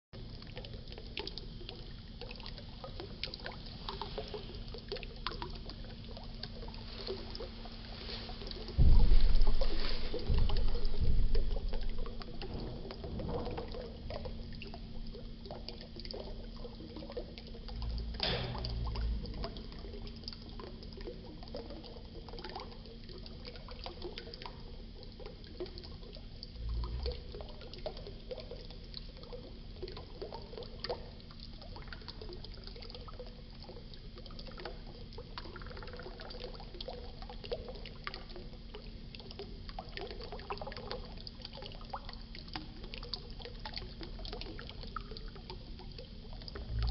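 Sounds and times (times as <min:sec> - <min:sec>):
low bumps: 0:08.8 - 0:14.4.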